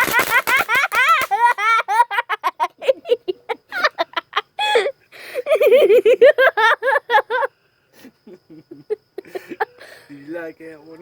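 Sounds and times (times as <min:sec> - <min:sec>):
person laughing hard: 0:00.0 - 0:07.5.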